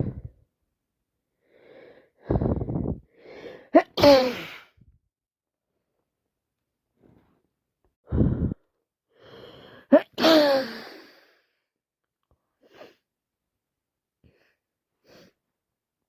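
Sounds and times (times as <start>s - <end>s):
woman sneezing: 3.8s - 4.7s, 9.9s - 10.8s.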